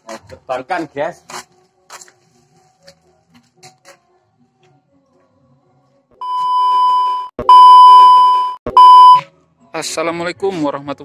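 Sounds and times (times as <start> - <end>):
high electronic beep tone: 6.2 - 9.2.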